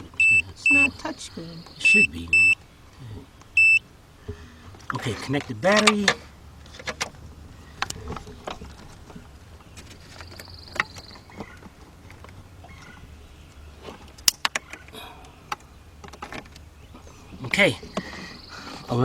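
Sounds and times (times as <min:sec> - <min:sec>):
high electronic beep: 0:00.2 - 0:01.0, 0:01.8 - 0:02.6, 0:03.6 - 0:03.8.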